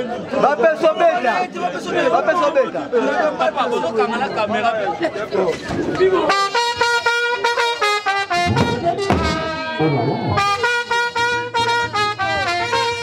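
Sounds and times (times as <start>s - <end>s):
brass band playing: 6.3s - 13.0s.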